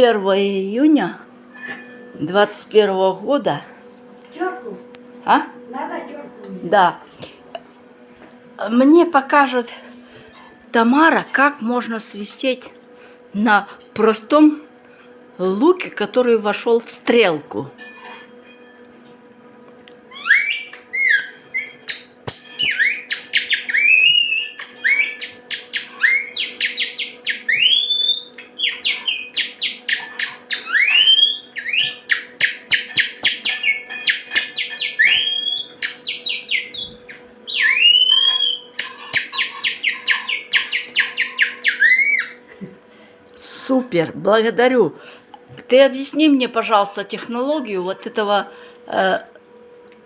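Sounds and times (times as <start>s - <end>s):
chirping whistles on onion stalk: 20.1s - 42.4s.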